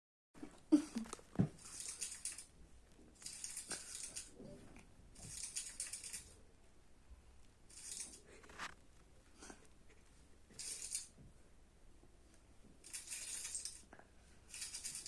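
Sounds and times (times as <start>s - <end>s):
scratchy rustling noise: 7.7s - 9.2s.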